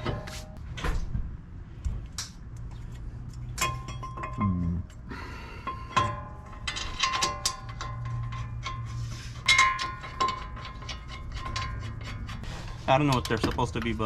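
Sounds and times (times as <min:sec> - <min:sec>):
metal tools clinking on metal: 0:03.5 - 0:14.0.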